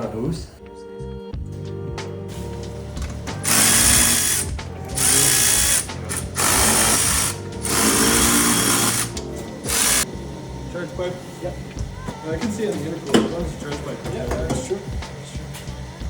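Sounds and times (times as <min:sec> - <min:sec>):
power tool undoing bolts: 0:02.5 - 0:10.1.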